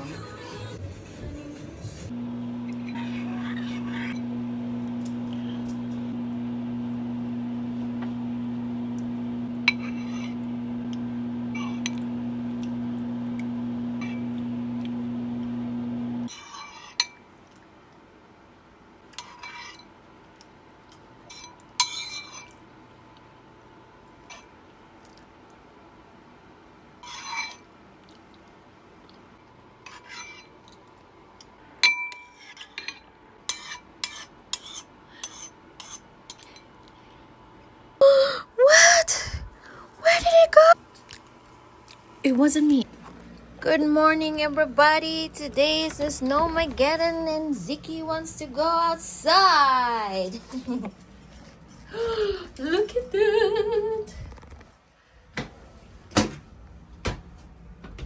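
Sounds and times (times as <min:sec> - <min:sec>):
low electrical hum: 0:33.1 - 0:58.0
light clinks and knocks: 0:50.5 - 0:53.2.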